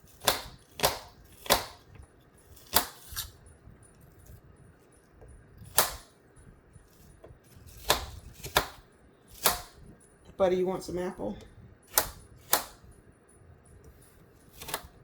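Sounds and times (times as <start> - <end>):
knife chopping on cutting board: 0.1 - 1.9, 2.5 - 3.3, 5.6 - 6.1, 7.2 - 9.8, 11.9 - 12.8, 14.5 - 15.0.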